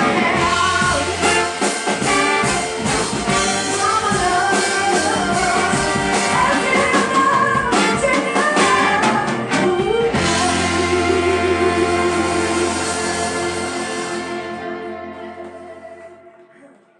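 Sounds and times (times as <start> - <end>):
soul band playing: 0.0 - 16.6
drum kit: 0.0 - 16.7
person singing: 0.0 - 16.9.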